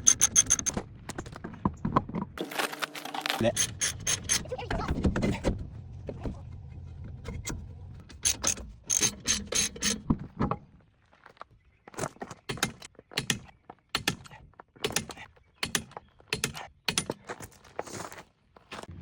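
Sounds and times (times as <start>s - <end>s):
ratchet wrench clicking: 0.0s - 0.8s, 3.5s - 4.4s, 8.2s - 10.0s.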